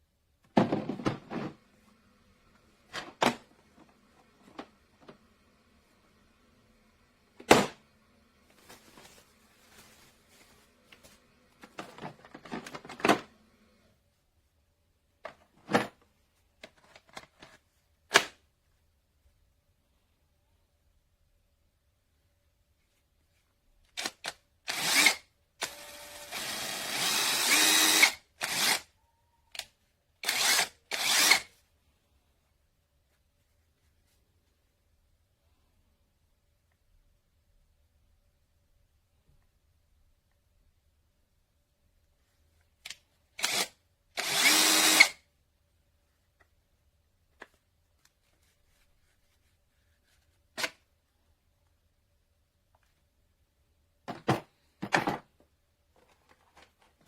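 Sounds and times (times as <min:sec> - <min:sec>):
power tool motor bursts: 0:24.7 - 0:28.9, 0:30.2 - 0:31.5, 0:43.4 - 0:45.2.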